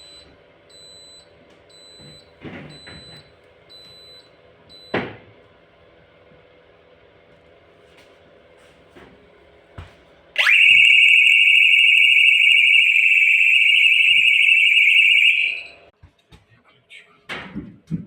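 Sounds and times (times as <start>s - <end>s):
high-pitched alarm tone: 10.4s - 15.8s.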